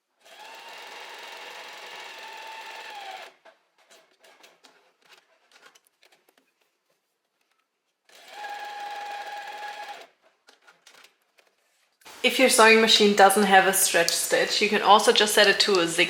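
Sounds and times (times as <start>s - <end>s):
sewing machine running: 0.0s - 4.5s, 8.1s - 10.2s.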